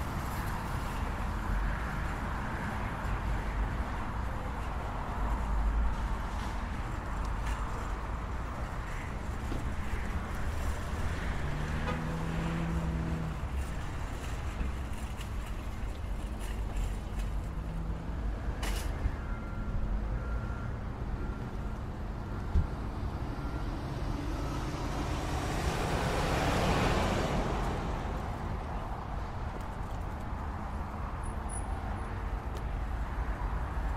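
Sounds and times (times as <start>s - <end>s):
rumble of traffic: 0.0s - 33.9s.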